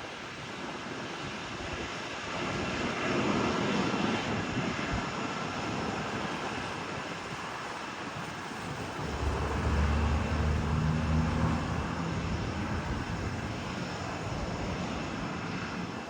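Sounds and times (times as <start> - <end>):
jet aircraft passing: 8.3 - 16.0.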